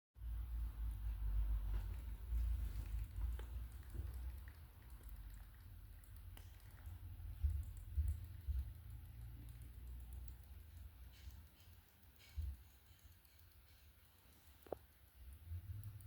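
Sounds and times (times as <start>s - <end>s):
raccoon licking and nibbling: 0.9s - 16.0s
dull low thumps: 7.2s - 9.0s.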